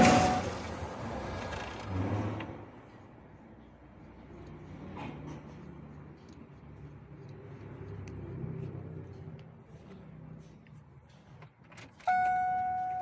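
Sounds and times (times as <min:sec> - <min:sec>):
dashboard electronic warning tone: 0:00.0 - 0:00.8.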